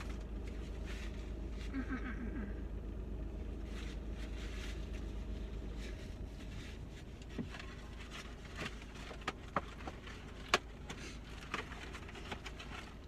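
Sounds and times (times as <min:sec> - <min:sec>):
car engine idling: 0:00.0 - 0:13.0
food handling clicks and crackles: 0:07.1 - 0:13.0.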